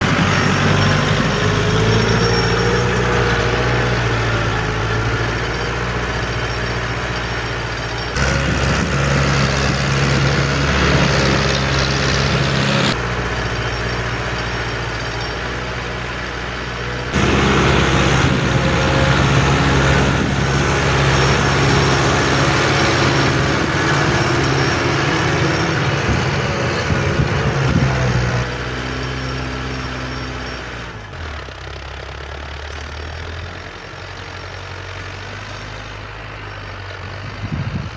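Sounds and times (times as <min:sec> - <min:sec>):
tractor diesel engine running: 0:00.0 - 0:37.9.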